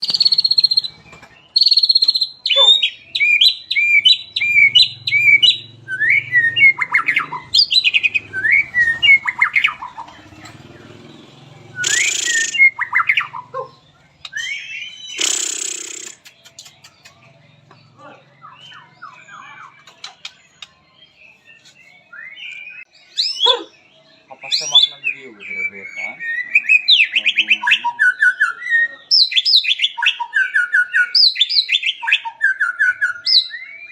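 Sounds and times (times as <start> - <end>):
harsh bird call bursts: 0.0 - 10.4, 11.2 - 16.9
bird singing: 0.0 - 33.9.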